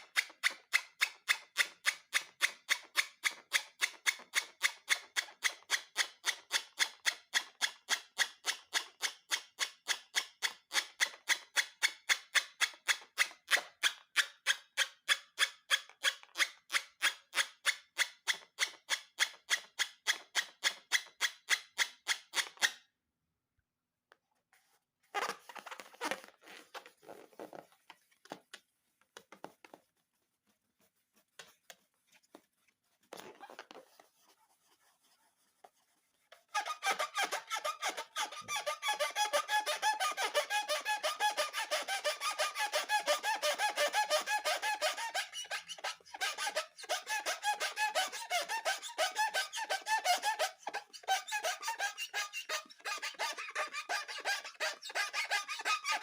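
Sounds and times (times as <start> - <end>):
rustling and crinkling: 24.4 - 36.6.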